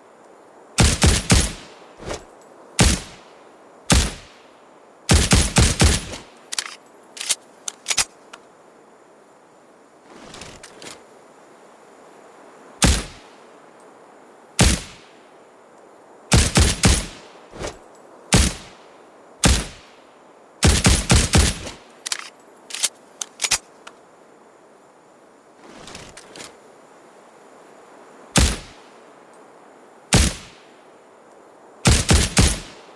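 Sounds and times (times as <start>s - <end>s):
suppressed pistol shots: 3.9s - 4.3s, 28.4s - 28.8s, 30.2s - 30.6s, 31.9s - 32.8s
faint sharp ticks: 21.6s - 24.0s.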